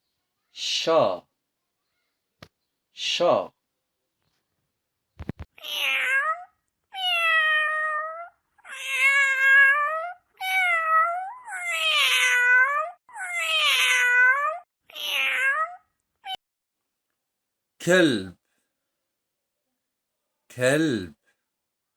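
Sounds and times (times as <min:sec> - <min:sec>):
cat meowing: 0:05.6 - 0:16.4.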